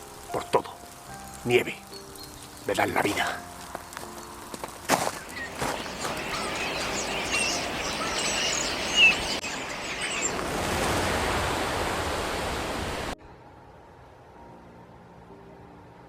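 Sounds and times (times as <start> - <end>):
small birds chirping: 0.0 - 11.8
rushing outdoor background noise: 0.0 - 16.0.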